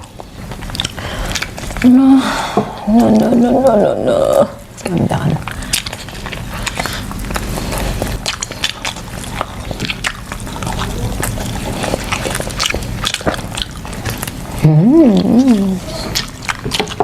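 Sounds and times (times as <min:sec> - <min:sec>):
wet eating sounds: 0:00.0 - 0:17.0.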